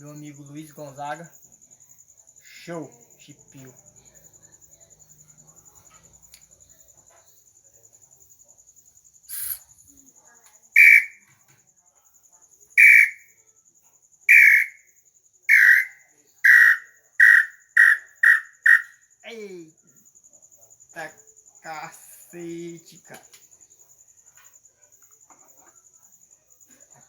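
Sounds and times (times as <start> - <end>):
high insect trill: 0.0 - 27.0
bird-call whistle notes: 10.8 - 11.2, 12.8 - 13.3, 14.3 - 14.8.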